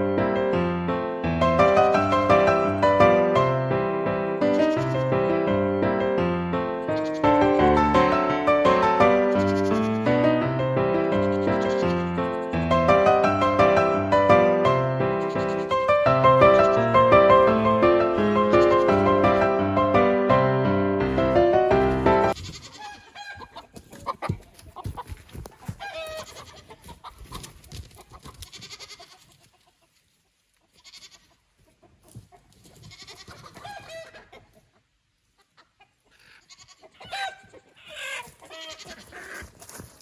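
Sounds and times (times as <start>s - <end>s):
piano music: 0.0s - 22.4s
chickens clucking: 11.4s - 19.7s, 21.1s - 39.7s.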